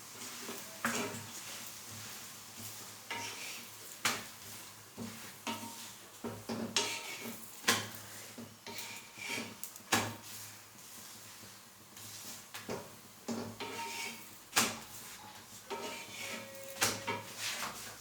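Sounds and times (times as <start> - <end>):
metal utensil scraping a pan: 0.2 - 1.6, 3.1 - 3.7, 5.0 - 10.1, 13.3 - 18.0.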